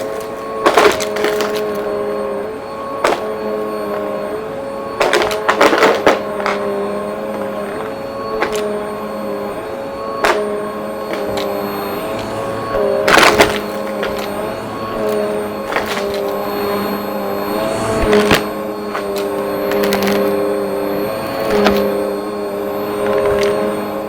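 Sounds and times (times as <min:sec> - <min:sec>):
vacuum cleaner motor whine: 0:00.0 - 0:24.0
crunching debris: 0:10.2 - 0:20.4.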